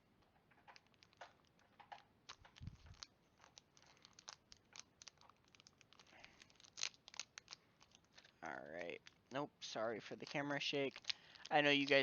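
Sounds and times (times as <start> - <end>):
trading cards being handled: 0.4 - 12.0.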